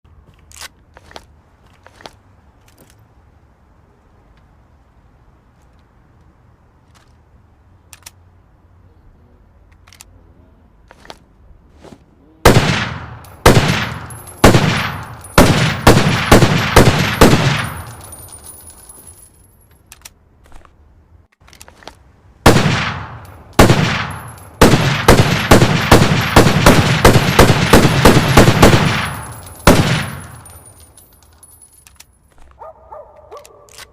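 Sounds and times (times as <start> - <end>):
rifle shots: 12.4 - 18.2, 22.4 - 30.7.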